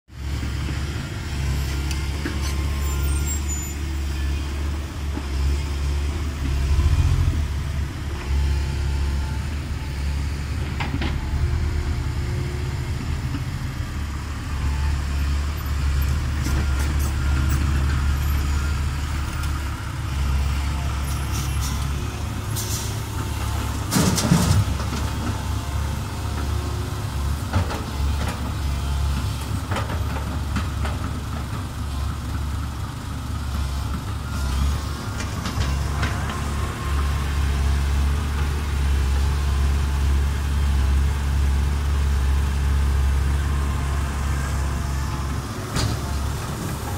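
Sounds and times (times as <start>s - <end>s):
heavy diesel engines running: 0.1s - 46.9s
excavator clatter: 21.3s - 32.8s, 33.6s - 37.0s, 44.8s - 46.9s.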